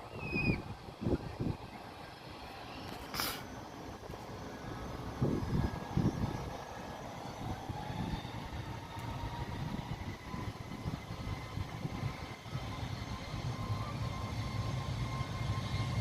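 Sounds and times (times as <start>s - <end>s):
distant airplane engine: 0.0s - 16.0s
faint rising whine: 0.0s - 16.0s
brief hiss: 2.9s - 3.5s.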